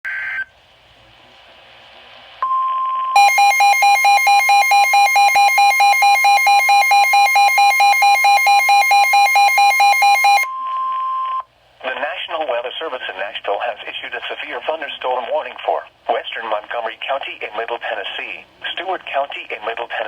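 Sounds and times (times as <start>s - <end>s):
faint radio hiss: 0.4s - 2.5s, 11.4s - 20.0s
loud harsh beeping alarm: 3.2s - 11.4s.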